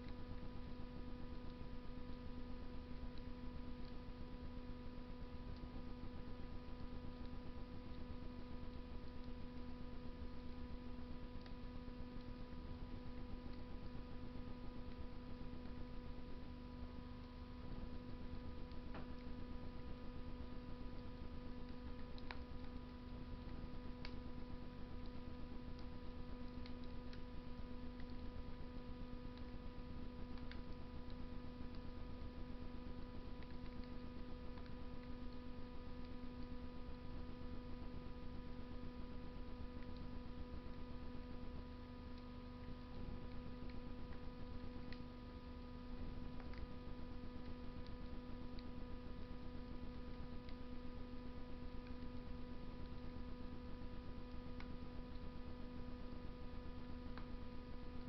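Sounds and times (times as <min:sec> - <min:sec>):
electrical hum: 0:00.0 - 0:58.0
wood fire crackling: 0:00.1 - 0:16.6, 0:17.3 - 0:41.6, 0:42.2 - 0:53.2.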